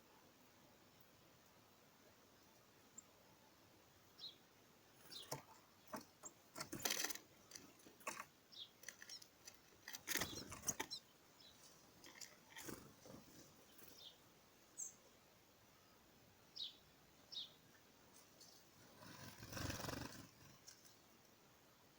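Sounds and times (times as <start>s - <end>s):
birds tapping and rustling: 5.0s - 14.2s, 18.1s - 21.3s.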